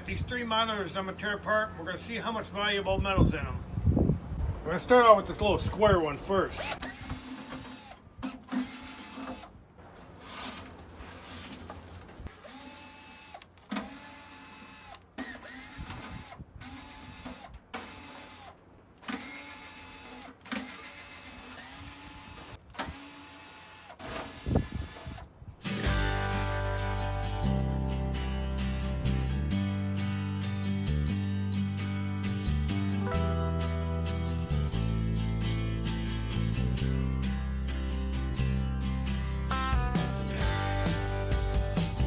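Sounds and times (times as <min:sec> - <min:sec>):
cordless drill spinning: 0:06.5 - 0:10.6, 0:12.3 - 0:25.3.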